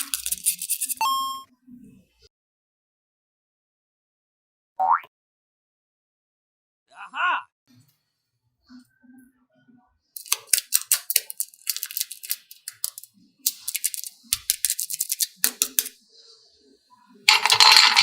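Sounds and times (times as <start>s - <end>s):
scissors snipping: 10.2s - 15.9s.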